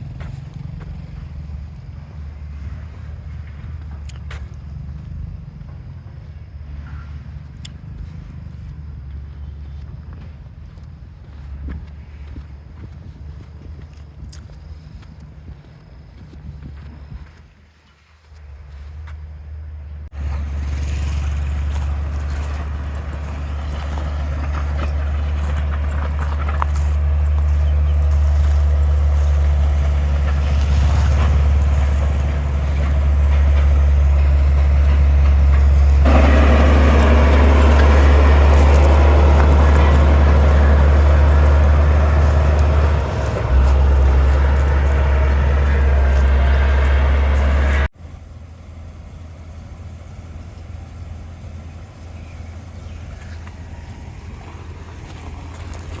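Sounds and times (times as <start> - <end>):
diesel machinery engine hum: 0.0 - 56.0
harsh machinery working noise: 20.2 - 47.9.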